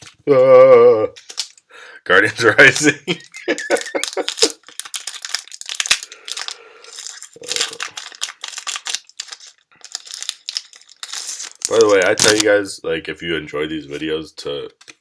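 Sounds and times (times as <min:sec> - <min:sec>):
foil wrapper crinkling and tearing: 0:01.2 - 0:01.6, 0:02.6 - 0:12.6.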